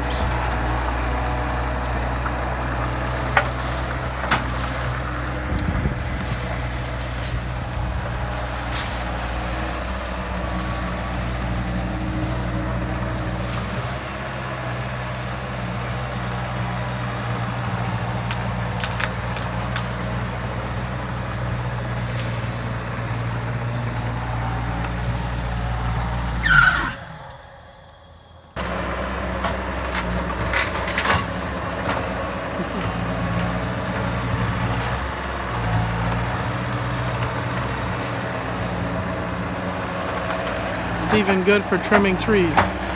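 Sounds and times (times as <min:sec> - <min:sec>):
skid steer engine running: 0:00.0 - 0:42.9
short high squeal: 0:26.4 - 0:28.5.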